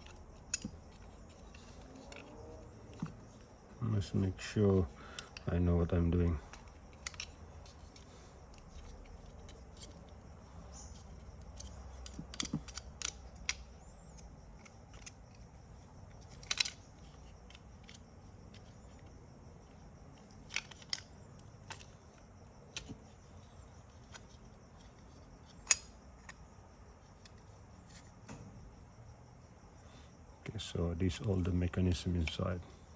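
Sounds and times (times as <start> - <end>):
small parts clicking and tapping: 0.0 - 3.5, 5.0 - 28.4.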